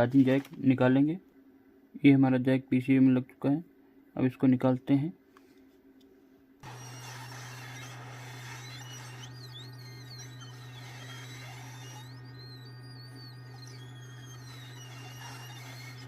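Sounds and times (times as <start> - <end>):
hot-air blower humming: 6.6 - 16.0.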